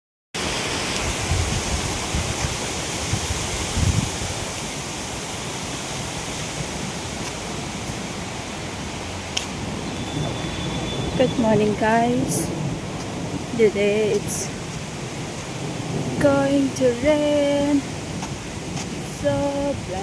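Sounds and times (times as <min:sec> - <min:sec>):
wind bumps on microphone: 0:00.4 - 0:08.4.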